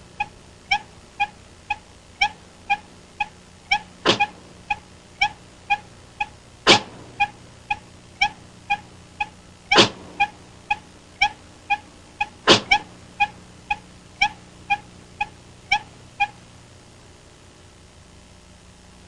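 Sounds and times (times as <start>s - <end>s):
high-pitched cartoon squeak: 7.2s - 16.4s.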